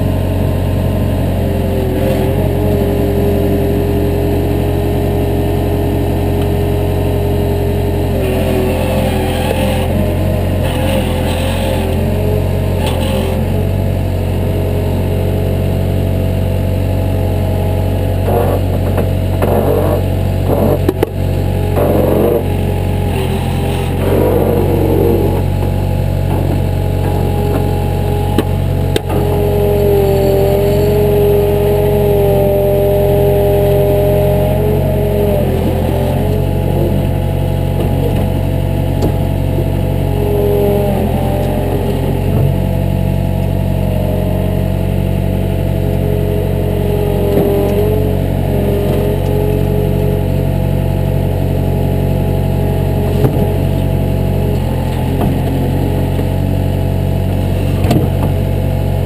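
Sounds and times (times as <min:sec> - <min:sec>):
diesel engine running: 0:00.0 - 0:59.0
high-pitched machine whine: 0:17.0 - 0:56.6.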